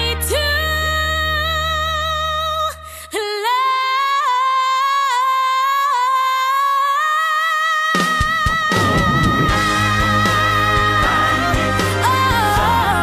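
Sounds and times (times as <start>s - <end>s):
low drone: 8.7s - 12.7s.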